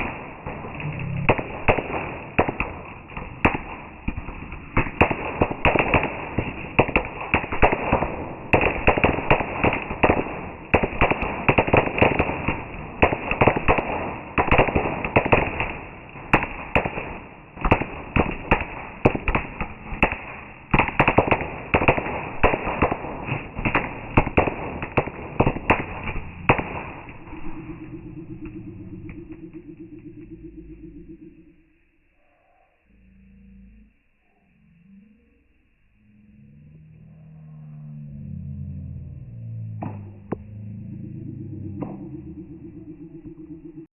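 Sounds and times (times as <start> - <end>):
low steady hum: 0.0 - 5.0, 23.9 - 43.9
fireworks crackling bangs: 0.0 - 29.6.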